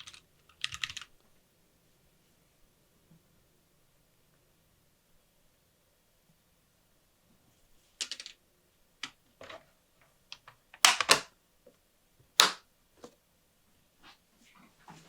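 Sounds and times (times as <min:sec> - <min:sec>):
keyboard keys clicking: 0:00.0 - 0:01.1.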